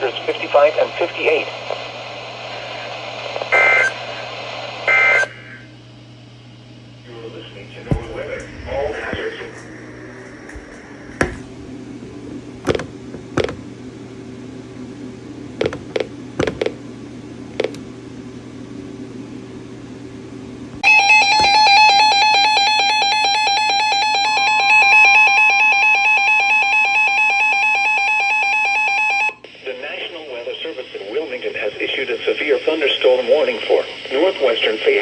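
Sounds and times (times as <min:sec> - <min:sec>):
radio receiver low hum: 0:00.0 - 0:22.5.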